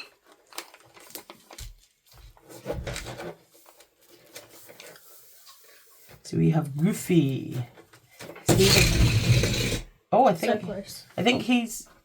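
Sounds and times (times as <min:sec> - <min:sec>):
packaging rustling: 0:00.1 - 0:05.1.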